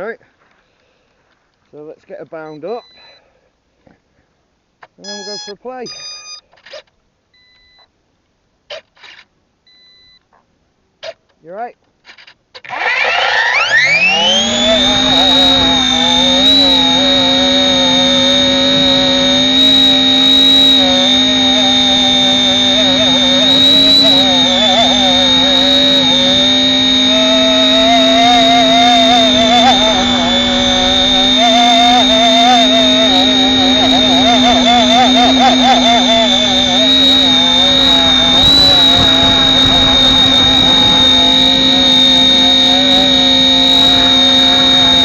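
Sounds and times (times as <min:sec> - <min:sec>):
rc helicopter whine: 0:05.1 - 0:06.4, 0:12.7 - 0:45.0.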